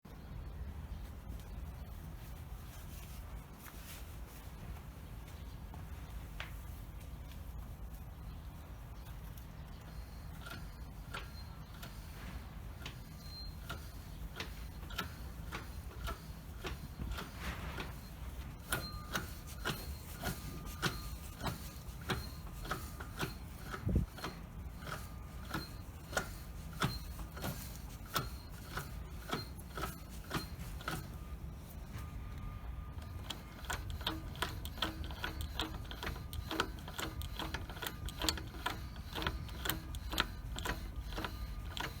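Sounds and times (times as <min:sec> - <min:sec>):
clacking and squeaking: 0:09.4 - 0:32.1, 0:32.9 - 0:42.0.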